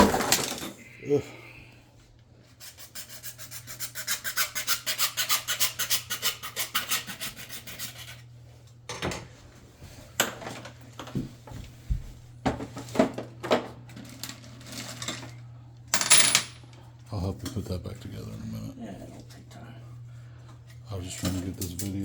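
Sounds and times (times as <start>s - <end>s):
parts knocking and clattering: 0.0s - 0.8s.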